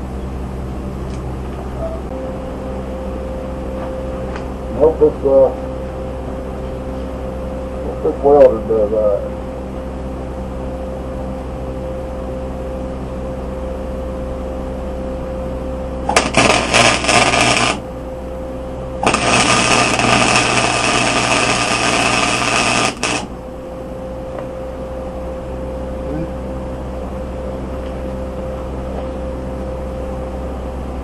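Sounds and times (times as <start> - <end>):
welder electrical hum: 0.0 - 31.0
welding arc crackling: 16.1 - 17.9, 19.0 - 23.4.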